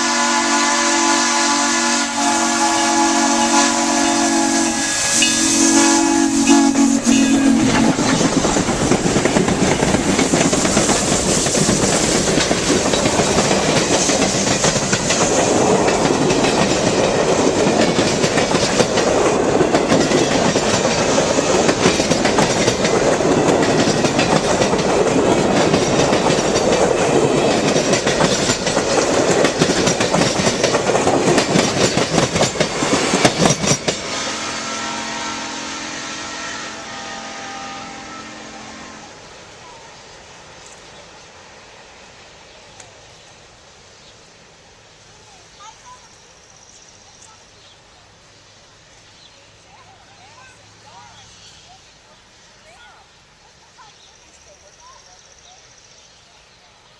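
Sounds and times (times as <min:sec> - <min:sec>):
steam locomotive whistle: 0:00.0 - 0:08.2, 0:33.9 - 0:39.4
train wheels clacking on rails: 0:02.2 - 0:34.6.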